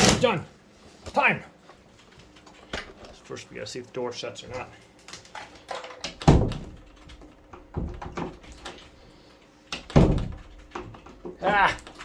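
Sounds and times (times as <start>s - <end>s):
door shutting with thud: 6.0s - 8.8s, 9.8s - 11.3s.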